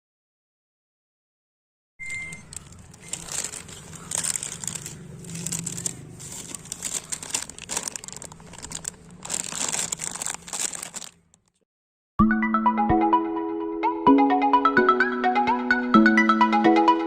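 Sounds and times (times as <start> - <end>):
crinkling and rustling: 2.3 - 11.6.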